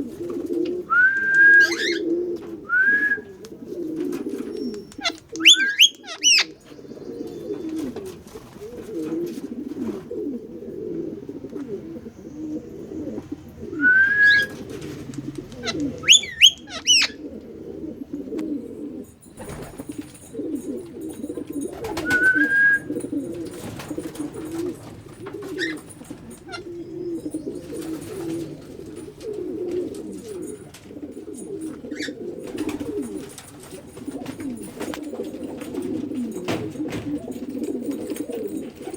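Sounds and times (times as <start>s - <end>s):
bird cooing: 0.0s - 38.9s
sharp whistled bird calls: 0.9s - 2.0s, 4.8s - 6.5s, 13.8s - 14.6s, 16.0s - 17.2s, 22.1s - 23.0s.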